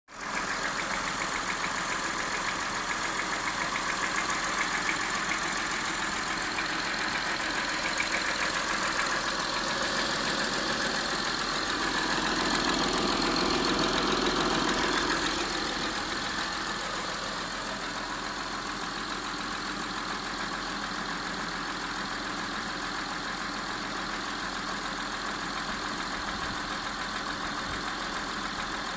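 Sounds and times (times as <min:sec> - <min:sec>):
engine running: 0:00.1 - 0:22.2
rapid engine knocking: 0:00.1 - 0:28.9.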